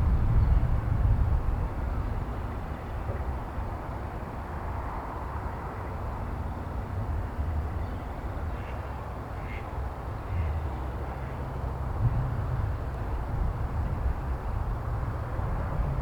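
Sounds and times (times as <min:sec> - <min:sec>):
wind buffeting microphone: 0:00.0 - 0:04.0, 0:11.8 - 0:16.0.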